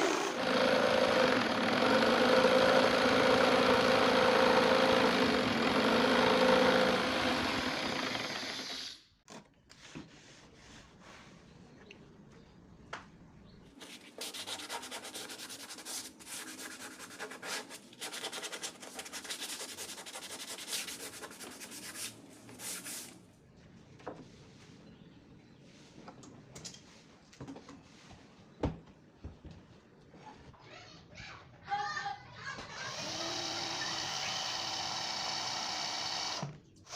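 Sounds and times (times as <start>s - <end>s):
electric power tool running: 0.0s - 9.0s, 32.8s - 36.9s
sanding strokes on wood: 13.8s - 23.1s.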